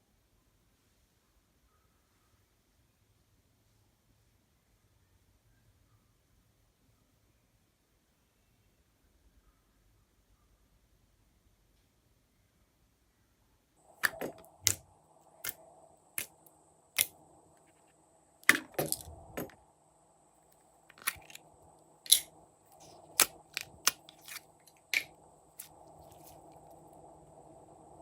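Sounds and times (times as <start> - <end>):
slime clicking and crackling: 22.1 - 25.7.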